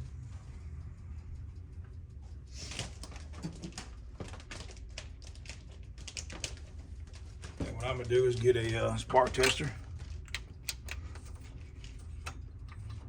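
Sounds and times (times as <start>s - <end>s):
steady low hum: 0.0s - 13.0s
metal parts and tools clicking: 8.4s - 13.0s.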